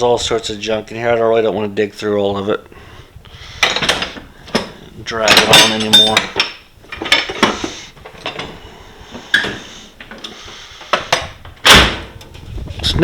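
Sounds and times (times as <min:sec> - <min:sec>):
metal tools clinking in a drawer: 0:03.6 - 0:08.6.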